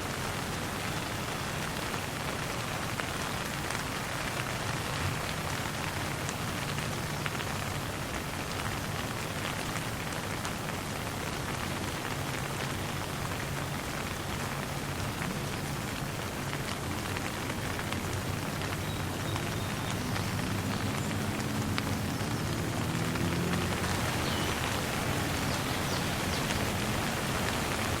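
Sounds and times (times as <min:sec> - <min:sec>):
light rain falling: 0:00.0 - 0:28.0
raindrop hits: 0:13.3 - 0:28.0.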